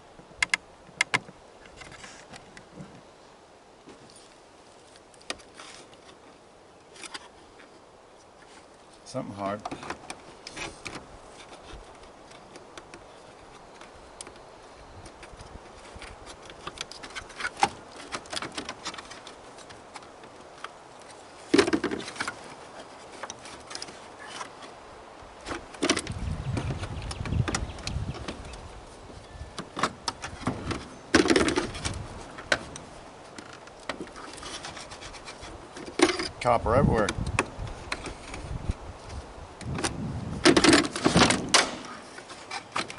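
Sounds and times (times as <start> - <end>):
small clicks and rattles of parts: 15.0 - 24.8, 42.1 - 42.9.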